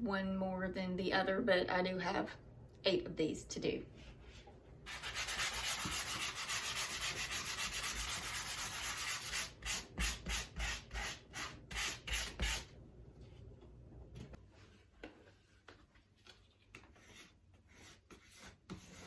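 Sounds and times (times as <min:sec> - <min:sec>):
hand-sanding a wall: 0:04.9 - 0:12.6.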